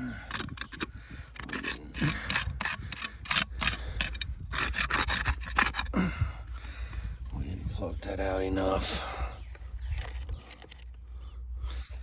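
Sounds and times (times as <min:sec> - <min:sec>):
rapid clicking and scraping: 0:00.0 - 0:06.0, 0:09.9 - 0:11.0.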